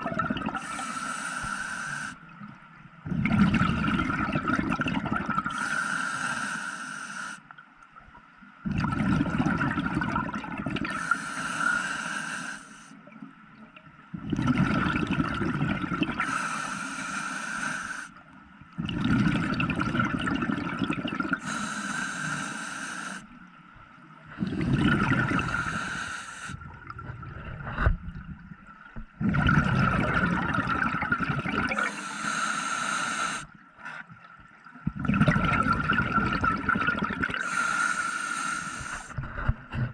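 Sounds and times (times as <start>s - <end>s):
underwater bubbling: 0.0s - 39.9s
diver breathing through regulator: 0.5s - 2.2s, 5.4s - 7.4s, 10.9s - 13.0s, 16.2s - 18.2s, 21.4s - 23.3s, 24.4s - 26.7s, 31.7s - 34.0s, 37.3s - 39.9s.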